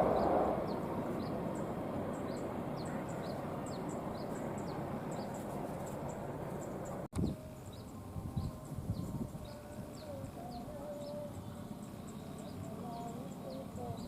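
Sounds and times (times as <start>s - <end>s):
train rumbling on rails: 0.0s - 7.0s
birds chirping: 0.0s - 14.0s.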